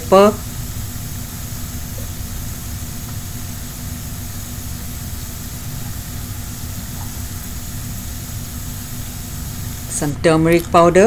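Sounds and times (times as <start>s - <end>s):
faint steady tone: 0.0s - 10.2s
fan humming and hissing: 0.0s - 11.0s.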